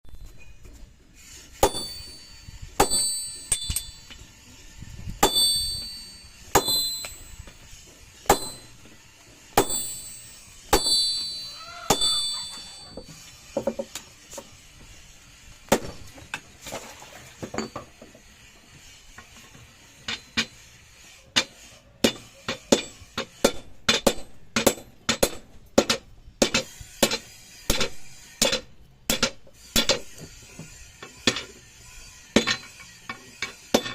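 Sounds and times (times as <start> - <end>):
hammer striking steel on anvil: 1.6 - 4.3, 5.2 - 7.6, 8.2 - 13.2, 21.4 - 30.2, 32.4 - 33.9
high metallic ringing: 1.6 - 13.3.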